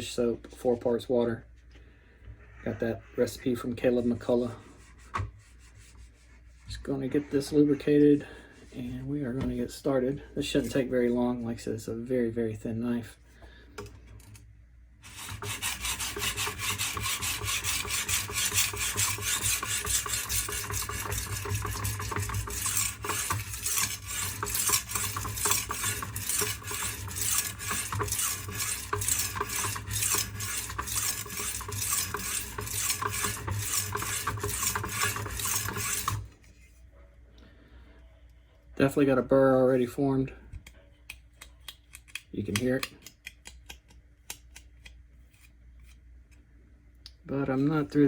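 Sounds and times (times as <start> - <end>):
knife scraping on sharpening stone: 15.1 - 36.2.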